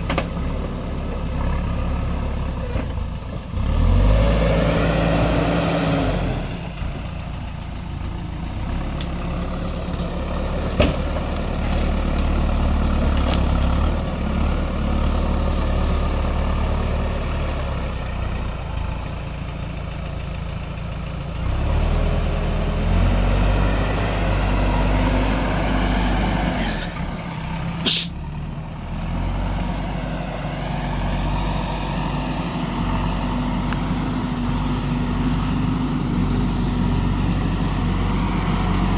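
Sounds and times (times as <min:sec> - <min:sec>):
diesel engine revving: 0:00.0 - 0:38.9.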